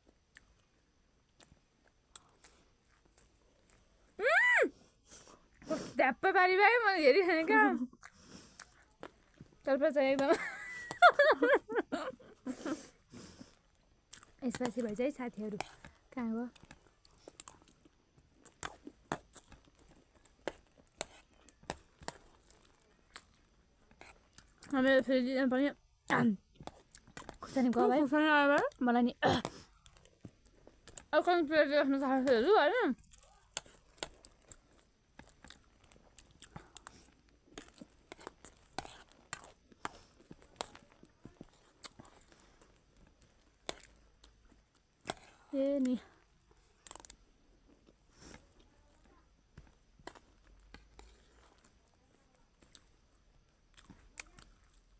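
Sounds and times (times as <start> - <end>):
crunchy snack being eaten: 1.3 - 3.9, 13.5 - 24.7, 33.0 - 48.6.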